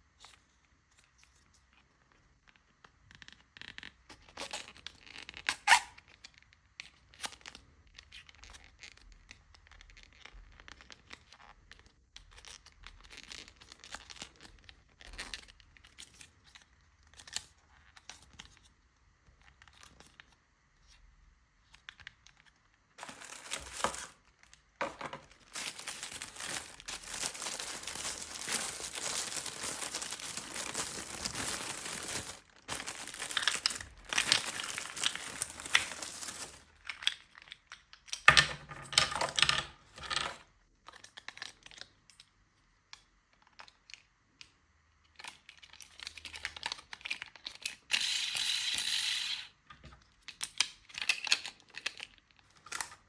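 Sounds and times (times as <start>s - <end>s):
plastic wrapper rustling and tearing: 3.1s - 18.6s, 21.7s - 37.9s, 45.2s - 47.9s, 50.2s - 53.0s
plastic crinkling: 23.0s - 37.5s.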